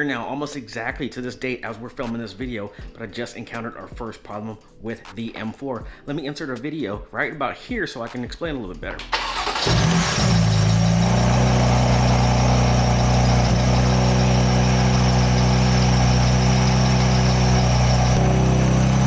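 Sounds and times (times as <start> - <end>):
car engine idling: 9.1 - 19.0.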